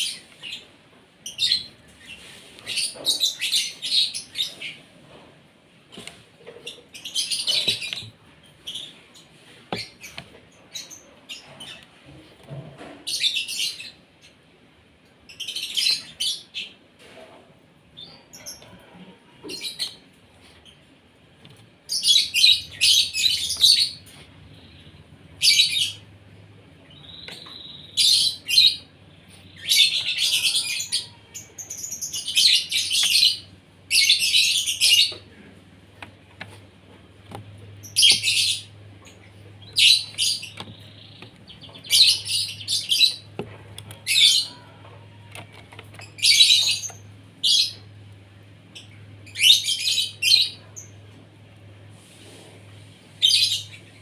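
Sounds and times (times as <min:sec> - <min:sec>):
starling calling: 0:26.9 - 0:36.6, 0:37.2 - 0:48.1, 0:48.7 - 0:51.0.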